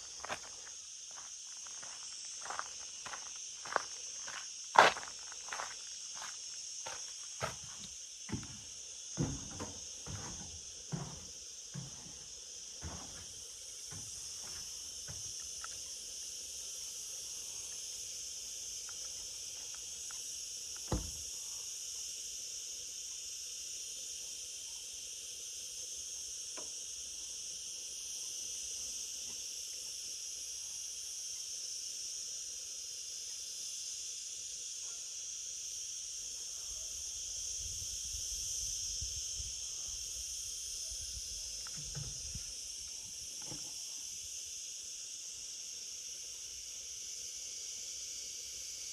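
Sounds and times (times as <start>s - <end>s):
footsteps: 0.0s - 15.3s
insects chorus: 0.0s - 48.9s.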